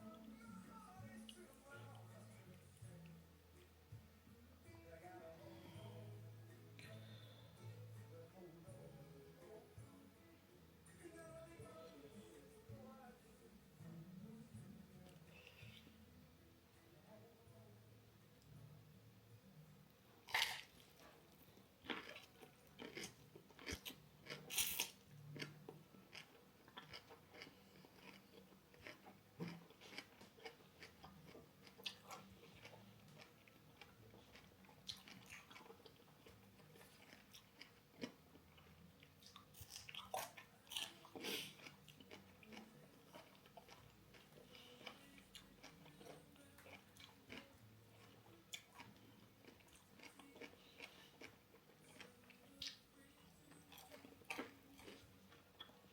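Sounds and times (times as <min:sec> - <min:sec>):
chewing and crunching salad: 0:20.2 - 0:55.9.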